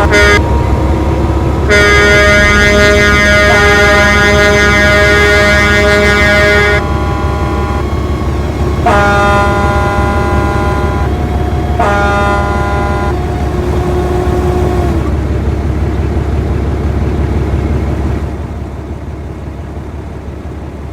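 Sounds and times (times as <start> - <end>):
vehicle air horns honking: 0.0 - 15.1
low engine rumble: 0.0 - 20.9.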